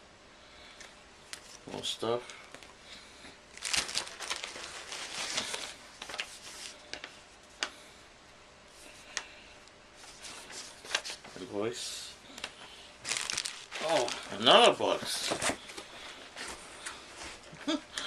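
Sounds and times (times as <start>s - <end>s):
packing material rustling: 3.5s - 6.9s, 13.0s - 16.6s.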